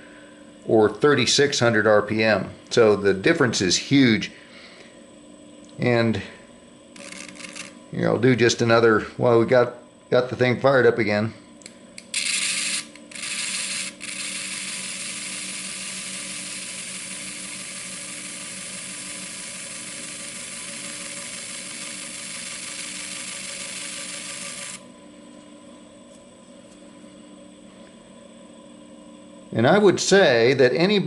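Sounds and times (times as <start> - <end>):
wheel motor humming: 12.2 - 24.9
abrasive wheel sanding hiss: 14.1 - 24.8.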